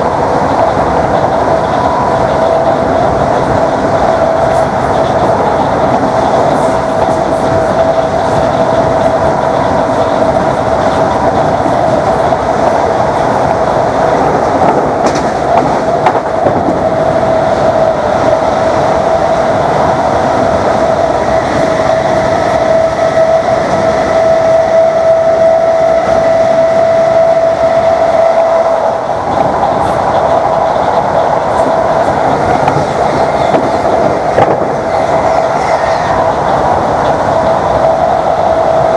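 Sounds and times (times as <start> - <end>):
wheel clatter on rails: 0.0 - 19.0, 28.9 - 38.9
train running noise: 0.0 - 38.9
train traction motor whine: 0.0 - 38.9.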